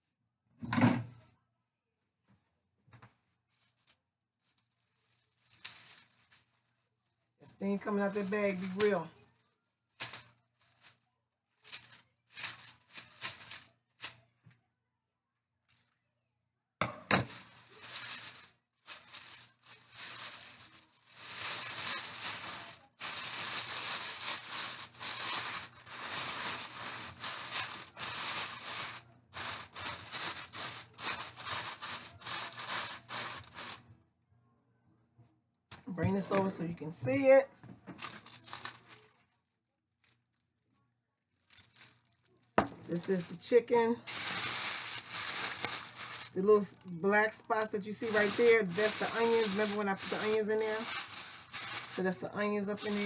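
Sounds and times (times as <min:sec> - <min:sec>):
plastic bag rustling and crinkling: 0:03.0 - 0:14.4, 0:15.6 - 0:16.0, 0:17.1 - 0:33.9, 0:37.9 - 0:40.6, 0:41.3 - 0:53.0.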